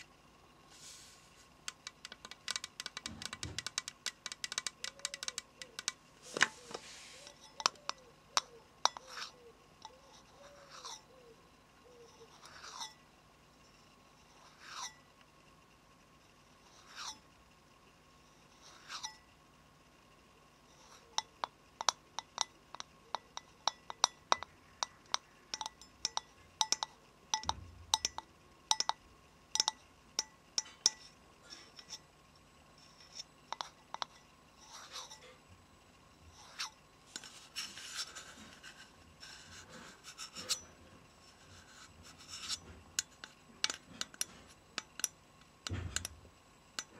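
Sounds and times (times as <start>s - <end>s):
rustle: 0.7s - 1.6s, 6.2s - 7.6s
slow scratching strokes: 0.7s - 1.6s, 6.2s - 7.7s, 8.9s - 11.1s, 12.1s - 13.0s, 14.1s - 15.1s, 16.6s - 17.3s, 18.3s - 19.2s, 32.8s - 35.4s, 36.3s - 44.6s
fingernails tapping on hard object: 1.7s - 6.5s, 21.2s - 29.0s.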